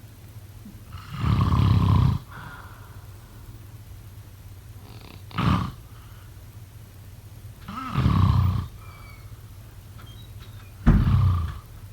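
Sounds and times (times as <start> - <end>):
steady low hum: 0.0 - 11.9
person snoring: 4.8 - 5.9, 7.7 - 8.8.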